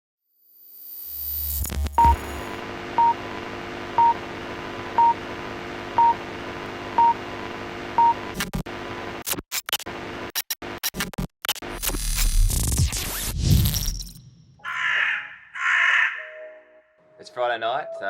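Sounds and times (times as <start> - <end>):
crackling digital glitches: 0.6 - 3.2, 8.0 - 14.3.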